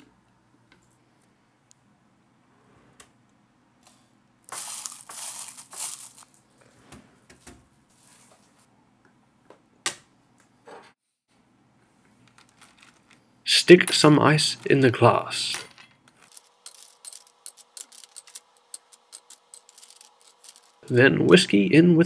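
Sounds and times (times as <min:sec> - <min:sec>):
ice packaging crinkling: 0:04.5 - 0:06.4, 0:12.3 - 0:13.2, 0:16.2 - 0:21.0.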